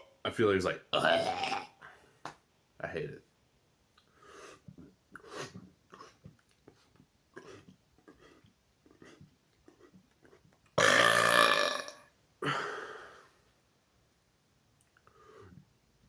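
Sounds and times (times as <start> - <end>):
man burping: 0.9 - 1.8, 10.8 - 12.8.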